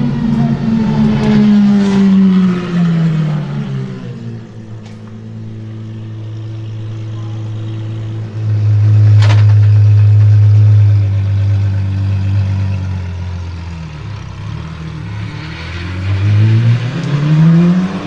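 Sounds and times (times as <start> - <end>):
engine pop: 0.0 - 11.2
car engine revving: 0.0 - 18.0.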